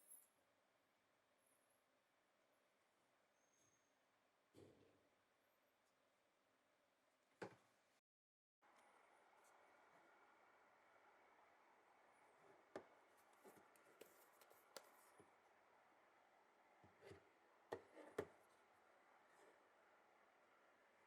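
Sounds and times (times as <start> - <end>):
light clicks and taps of packaging: 12.8 - 15.3.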